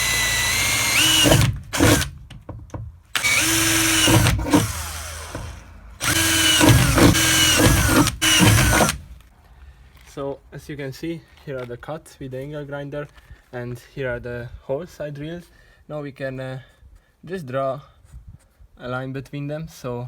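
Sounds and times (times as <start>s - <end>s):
power drill boring sheet metal: 0.0s - 2.1s, 3.2s - 9.0s.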